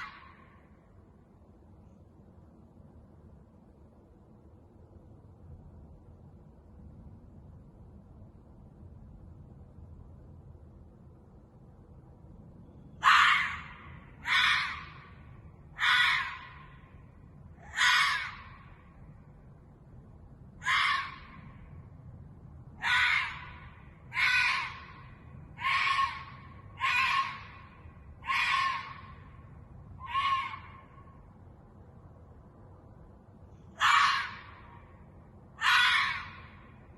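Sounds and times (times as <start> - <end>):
fox harsh hoarse calls: 0.0 - 0.6, 13.0 - 16.9, 17.6 - 18.9, 20.6 - 21.6, 22.8 - 29.4, 30.0 - 31.1, 33.7 - 34.9, 35.6 - 36.8.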